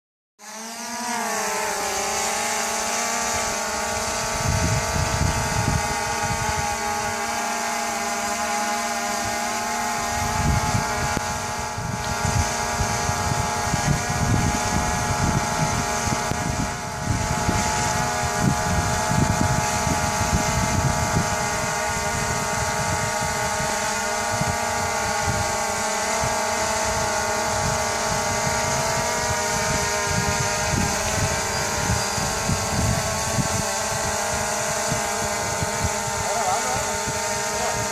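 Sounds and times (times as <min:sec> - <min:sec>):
drone propellers humming: 0:00.4 - 0:37.9
wind buffeting on microphone: 0:02.1 - 0:37.9.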